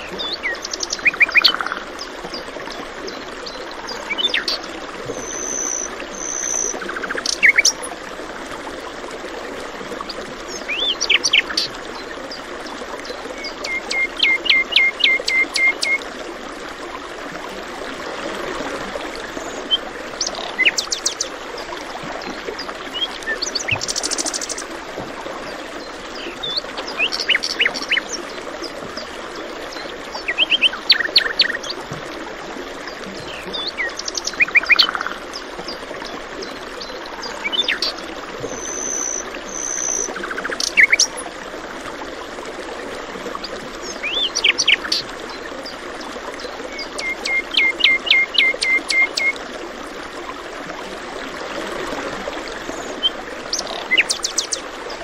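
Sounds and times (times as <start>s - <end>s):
stream water flowing: 0.0s - 55.0s.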